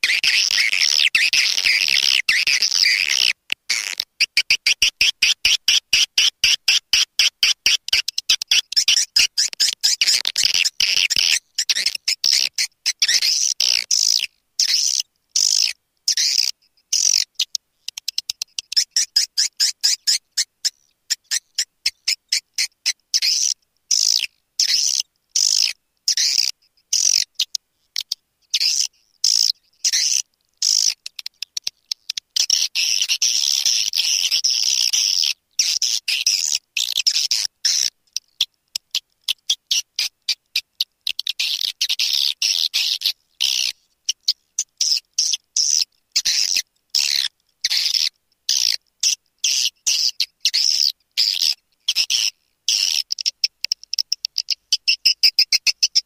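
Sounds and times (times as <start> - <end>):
twittering birds: 0.0 - 3.9.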